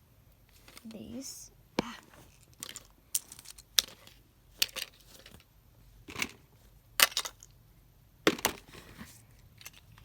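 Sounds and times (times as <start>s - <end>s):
fidget toys clattering: 1.8s - 7.6s.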